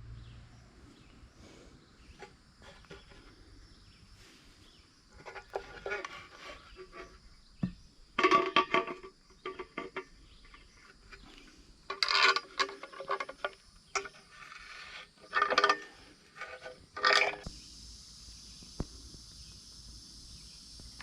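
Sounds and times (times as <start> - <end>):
metal tools clinking and rattling: 8.2 - 10.6, 11.9 - 14.6, 15.2 - 17.5.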